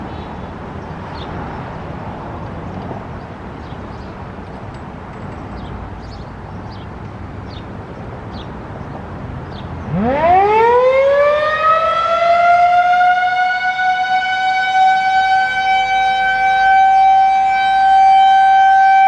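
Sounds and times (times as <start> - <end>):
traffic noise: 0.0 - 19.0
bird chirping: 2.6 - 10.1.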